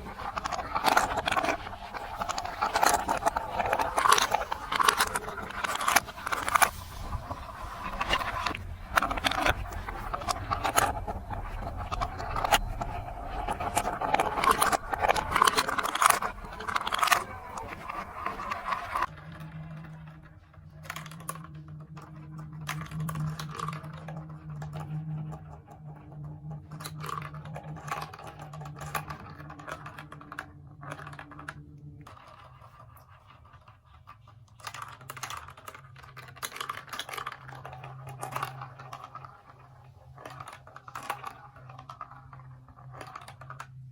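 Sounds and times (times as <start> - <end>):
plastic pieces clicking and clattering: 0.0 - 20.1, 20.8 - 43.9
steady low hum: 0.0 - 33.0.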